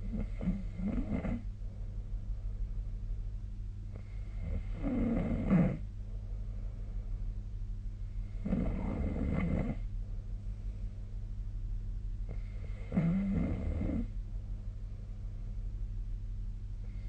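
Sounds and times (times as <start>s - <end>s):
person snoring: 0.0s - 1.4s, 4.4s - 5.8s, 8.4s - 9.8s, 12.3s - 14.1s
steady low hum: 0.0s - 17.0s.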